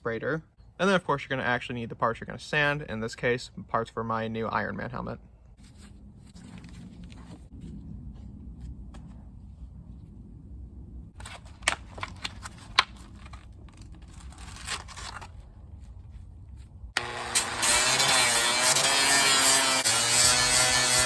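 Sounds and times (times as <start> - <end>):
low hum: 5.2 - 18.0
electric power sander: 17.0 - 21.0.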